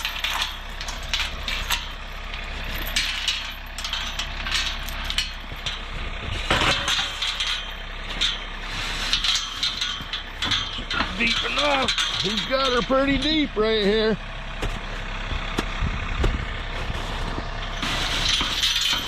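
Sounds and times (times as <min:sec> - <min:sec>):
clanks and rattles: 0:00.0 - 0:19.0
tractor diesel engine running: 0:00.0 - 0:19.0.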